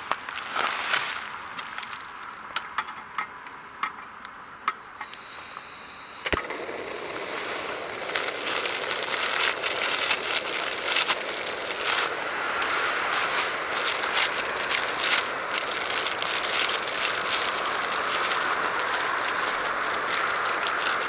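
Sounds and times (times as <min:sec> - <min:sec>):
campfire crackling and popping: 0:05.1 - 0:21.0.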